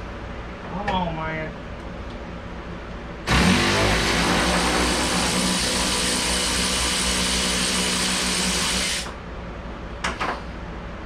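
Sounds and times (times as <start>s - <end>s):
cordless power tool running: 3.3s - 9.2s.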